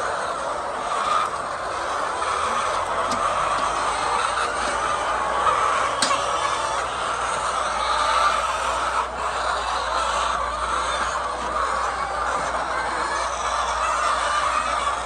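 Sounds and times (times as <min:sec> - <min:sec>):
hens clucking: 0:00.0 - 0:15.0.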